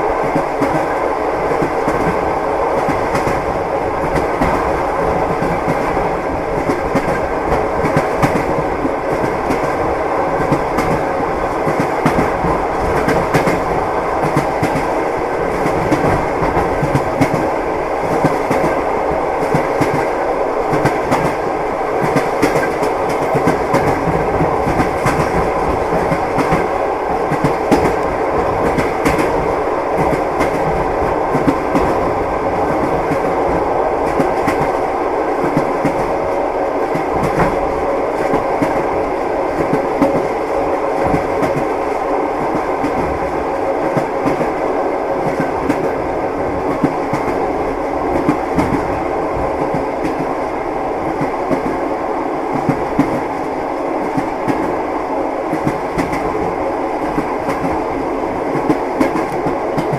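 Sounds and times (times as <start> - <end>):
train wheels clacking: 0.0 - 34.8, 39.6 - 40.4, 41.0 - 41.8, 48.0 - 50.4, 55.5 - 59.9
train rolling rumble: 0.0 - 59.9.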